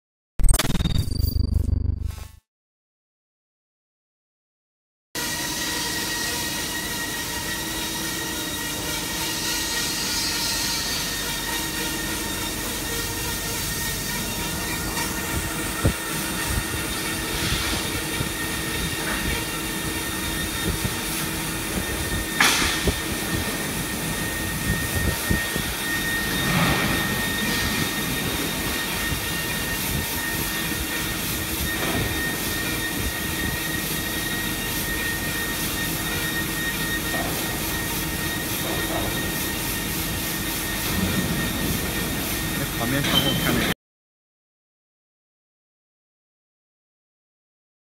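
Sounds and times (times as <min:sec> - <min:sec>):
cutting machine running: 0:05.2 - 0:43.7
faint hum and whine: 0:05.4 - 0:43.8.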